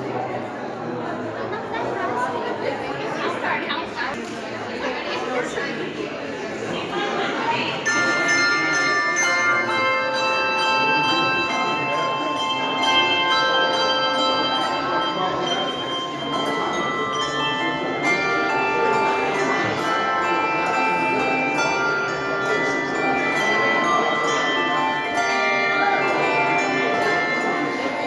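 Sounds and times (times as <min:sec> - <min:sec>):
handbell choir playing: 0:07.4 - 0:28.0.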